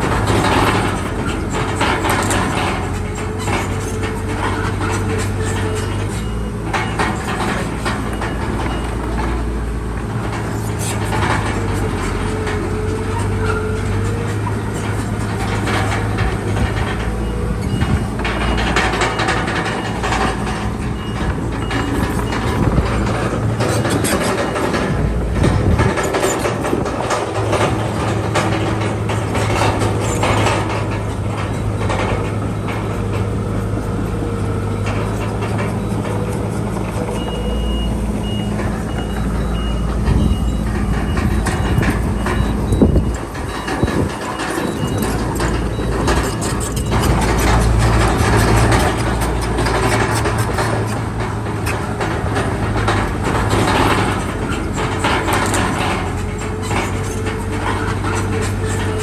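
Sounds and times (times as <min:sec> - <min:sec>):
bulldozer diesel engine running: 0:00.0 - 0:59.0
steel tracks clanking: 0:00.0 - 0:59.0
reversing alarm beeping: 0:15.4 - 0:50.8.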